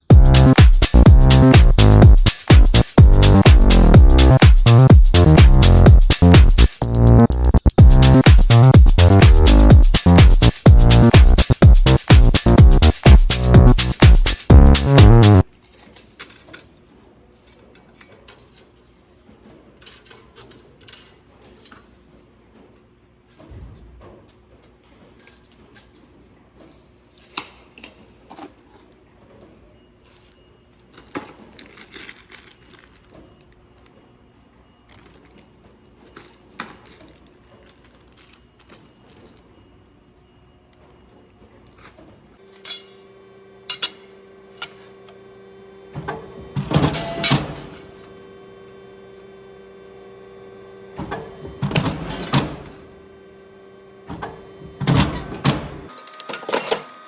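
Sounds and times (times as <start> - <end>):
steady hum: 0.0 - 15.5, 42.4 - 55.9
small metal pieces clinking: 15.5 - 16.8.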